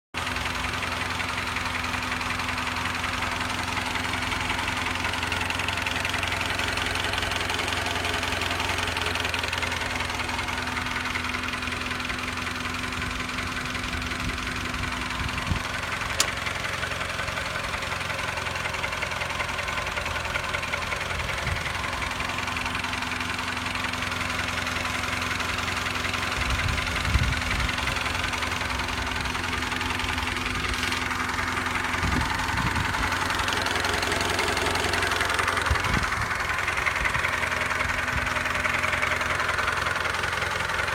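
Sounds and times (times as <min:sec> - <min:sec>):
engine running: 0:00.2 - 0:40.9
sharp click: 0:16.1 - 0:16.4.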